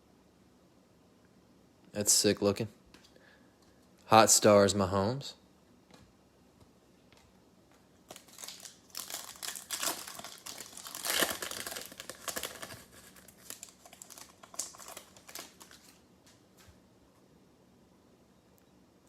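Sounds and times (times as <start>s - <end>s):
foil wrapper tearing and crinkling: 8.0s - 16.0s.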